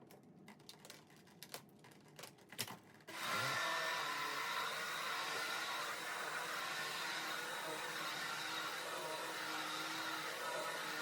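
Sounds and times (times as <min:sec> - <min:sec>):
plastic parts clicking and knocking: 0:00.0 - 0:03.1
vacuum cleaner motor whirring: 0:03.1 - 0:11.0.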